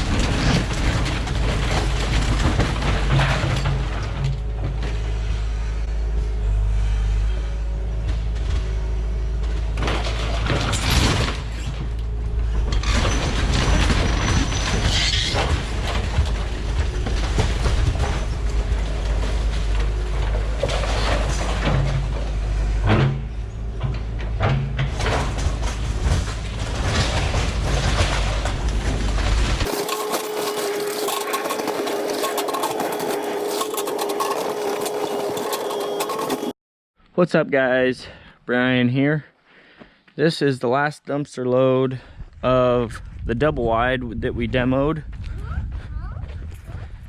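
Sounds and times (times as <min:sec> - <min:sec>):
debris crunching and scraping: 0:00.0 - 0:05.8, 0:08.0 - 0:36.6
excavator engine running: 0:00.0 - 0:36.6.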